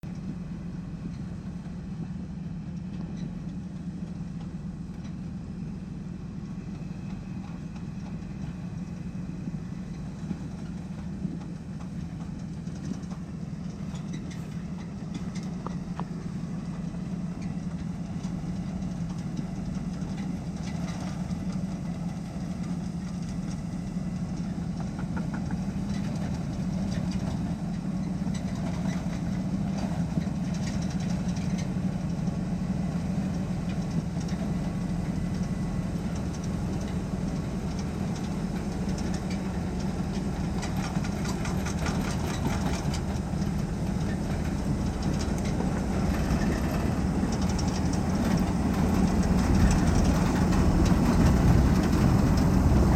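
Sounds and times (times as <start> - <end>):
combine harvester engine droning: 0.0 - 52.9
mechanical rattles and clicks: 36.2 - 52.9.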